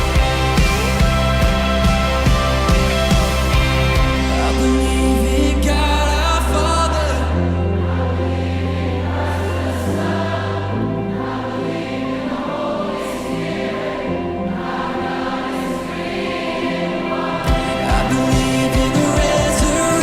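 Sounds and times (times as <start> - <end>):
drum beats: 0.0 - 4.4, 17.5 - 20.0
gospel choir singing: 0.0 - 20.0.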